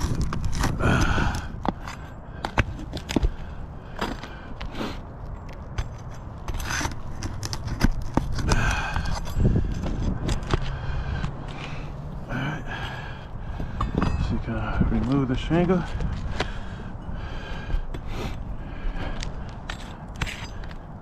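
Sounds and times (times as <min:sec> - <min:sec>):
roof shingles scraping and crackling: 0:00.0 - 0:04.9, 0:05.8 - 0:10.2
steady low rumble: 0:00.0 - 0:21.0.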